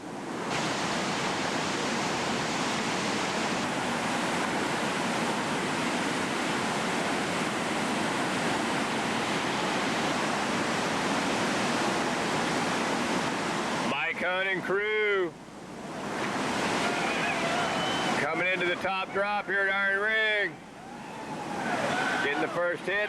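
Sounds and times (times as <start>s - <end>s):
whitewater rapid rushing: 0.0s - 23.0s.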